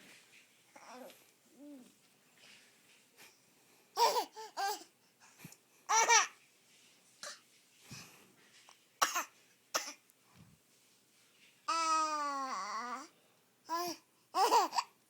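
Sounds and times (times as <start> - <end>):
baby laughing and babbling: 4.0 - 4.9, 5.9 - 6.4, 13.7 - 15.0.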